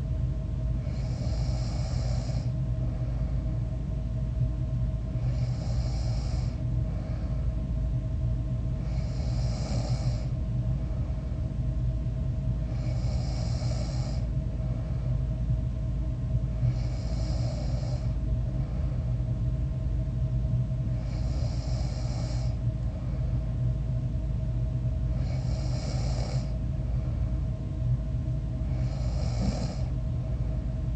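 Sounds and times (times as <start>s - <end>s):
steady low hum: 0.0s - 30.9s
person snoring: 0.8s - 2.5s, 5.2s - 6.6s, 8.8s - 10.4s, 12.7s - 14.3s, 16.6s - 18.2s, 21.0s - 22.6s, 25.2s - 26.5s, 28.7s - 29.9s.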